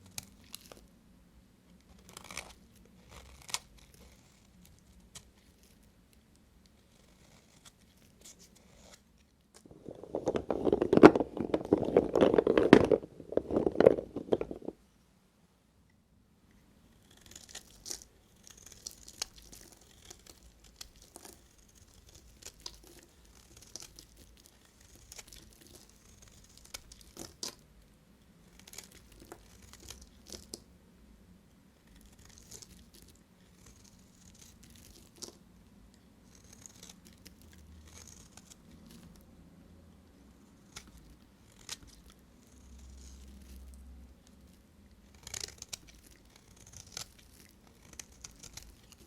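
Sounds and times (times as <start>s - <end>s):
knife cutting soap crackling: 1.8s - 5.9s, 6.7s - 14.8s, 17.0s - 27.6s, 28.6s - 30.6s, 40.4s - 49.0s.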